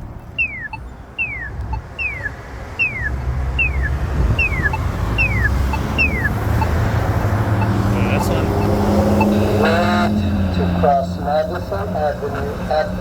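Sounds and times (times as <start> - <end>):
falling chirp locator tone: 0.0 - 10.1
low traffic rumble: 0.0 - 13.0.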